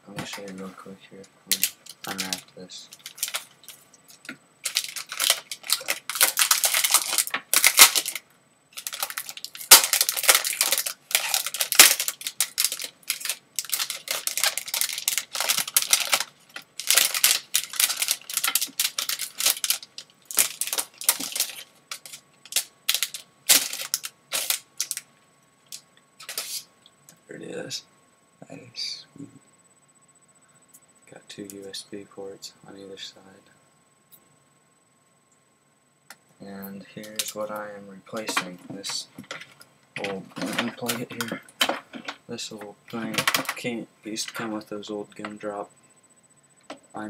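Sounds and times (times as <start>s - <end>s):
plastic wrapping crinkling: 1.5s - 25.1s, 25.7s - 26.6s.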